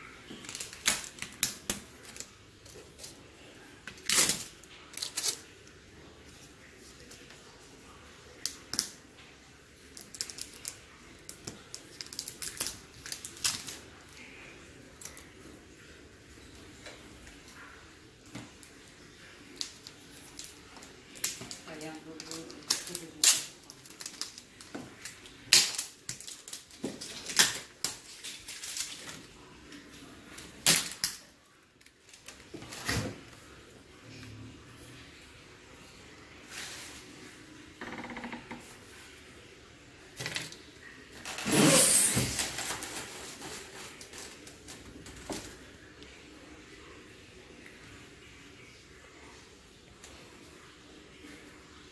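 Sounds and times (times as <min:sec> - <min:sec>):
clicks and packaging rustles: 0:00.2 - 0:05.6, 0:09.8 - 0:14.2, 0:19.5 - 0:33.2, 0:40.2 - 0:45.7.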